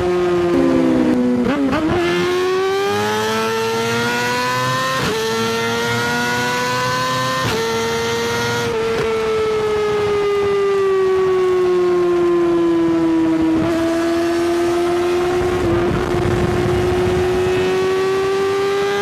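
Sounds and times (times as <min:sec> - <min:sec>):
motorcycle engine running hard: 0:07.0 - 0:19.0.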